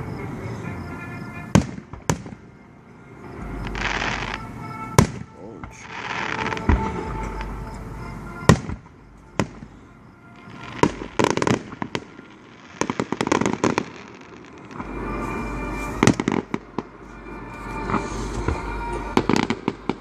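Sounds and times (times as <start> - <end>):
firework bangs: 1.1 - 2.6, 3.4 - 20.0
crackling firework pops: 1.6 - 2.4, 10.8 - 12.1.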